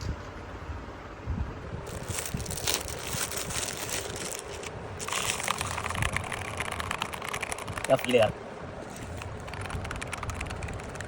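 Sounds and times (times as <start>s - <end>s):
keyboard clicks and crackles: 1.9s - 8.3s, 8.9s - 11.0s.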